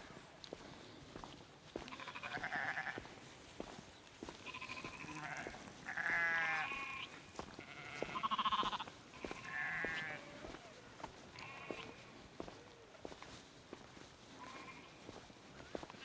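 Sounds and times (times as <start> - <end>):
sheep bleating: 1.8 - 3.1, 4.4 - 12.2, 14.4 - 16.0.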